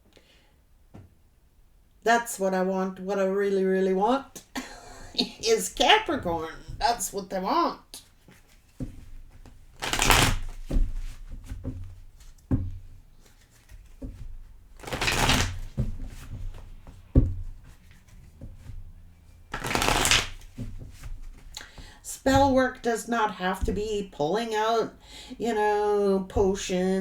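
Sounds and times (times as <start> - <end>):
cards shuffled by hand: 8.0 - 11.5, 13.2 - 18.8, 19.5 - 21.8.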